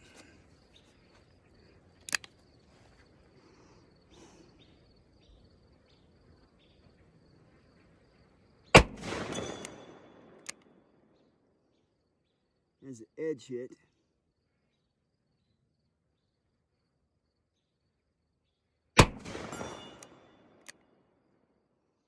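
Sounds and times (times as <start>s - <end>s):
faint high insect tone: 0.0s - 22.0s
sharp click: 2.1s - 2.3s.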